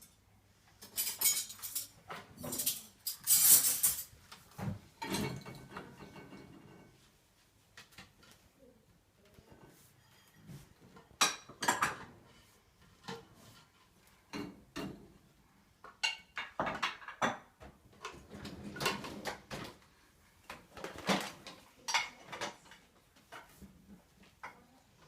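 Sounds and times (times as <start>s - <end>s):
metal silverware clinking: 0.8s - 4.1s.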